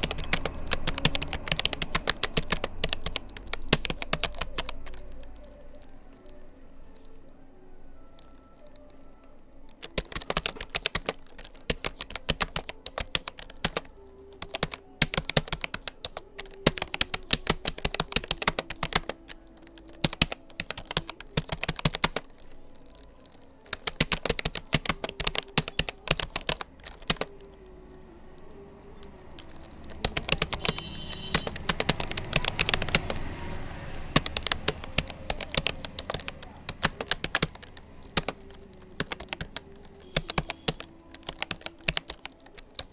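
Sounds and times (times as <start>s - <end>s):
computer keyboard keystrokes: 0.0s - 7.2s, 8.1s - 27.6s, 28.4s - 42.9s
low rushing noise: 27.4s - 38.8s.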